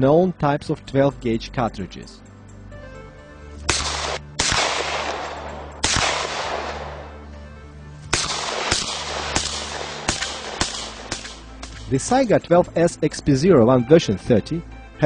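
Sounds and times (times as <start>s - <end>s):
background music: 0.0s - 15.0s
shotgun shots with echo: 3.7s - 7.2s, 8.1s - 12.1s.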